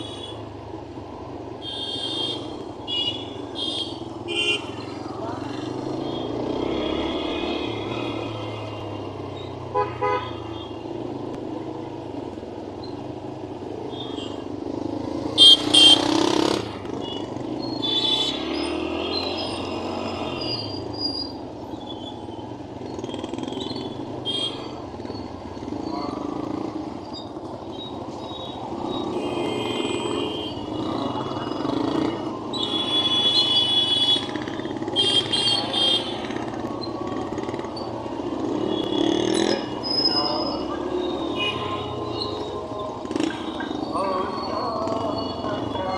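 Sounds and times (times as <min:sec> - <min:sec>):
busy street traffic: 0:00.0 - 0:45.9
vehicle horns honking: 0:01.6 - 0:04.9, 0:05.9 - 0:10.8, 0:15.3 - 0:19.8, 0:24.2 - 0:24.8, 0:29.0 - 0:36.6, 0:38.4 - 0:45.9.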